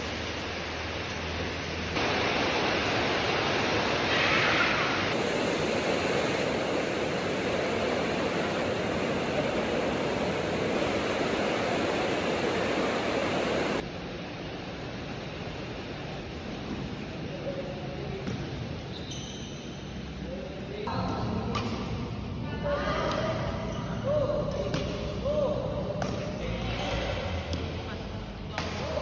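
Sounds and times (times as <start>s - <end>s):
heavy rain falling: 0.0s - 13.8s.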